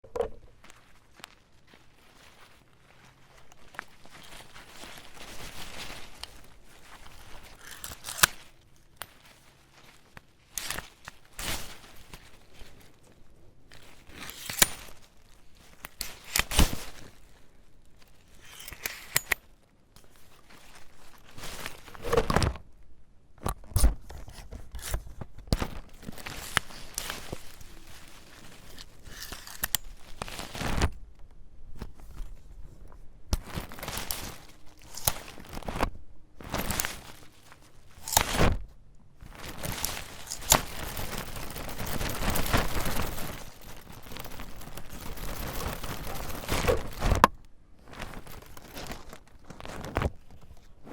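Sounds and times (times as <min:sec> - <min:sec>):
umbrella fabric rustling: 0:00.2 - 0:22.5, 0:24.2 - 0:31.0, 0:39.2 - 0:50.9
umbrella catch clicks and snaps: 0:07.4 - 0:08.5, 0:14.2 - 0:15.0, 0:15.8 - 0:16.9, 0:33.3 - 0:35.8, 0:38.0 - 0:38.6, 0:39.6 - 0:41.1.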